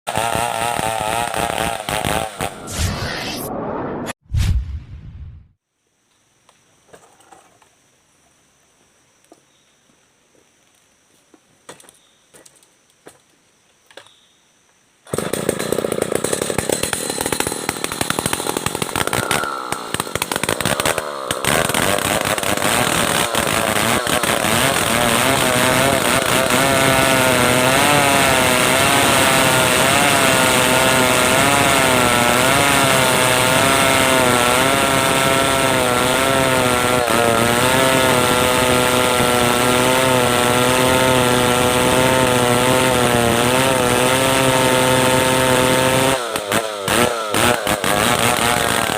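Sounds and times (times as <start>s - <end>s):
chainsaw cutting hardwood: 0.1s - 3.2s, 15.1s - 48.9s.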